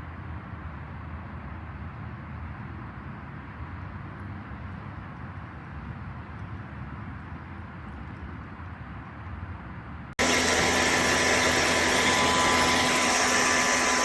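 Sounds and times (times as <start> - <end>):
pressure washer spraying water: 10.2 - 14.0.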